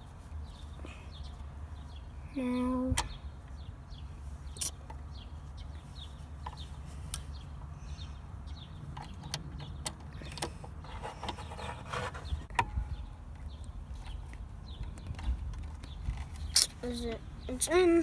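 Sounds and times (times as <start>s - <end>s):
bird chirps: 0.4s - 9.8s.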